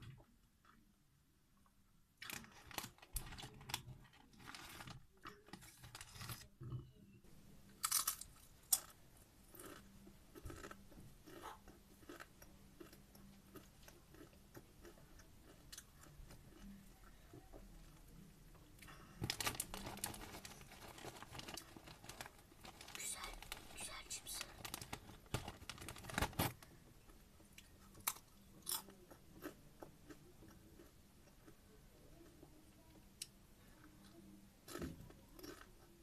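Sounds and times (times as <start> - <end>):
chewing crunchy chips: 7.8 - 17.2, 27.9 - 31.6, 34.7 - 36.0.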